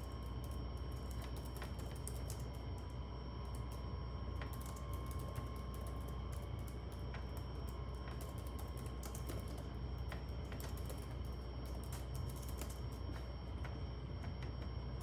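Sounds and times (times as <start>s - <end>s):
keyboard typing: 0.1s - 2.5s, 4.4s - 13.0s.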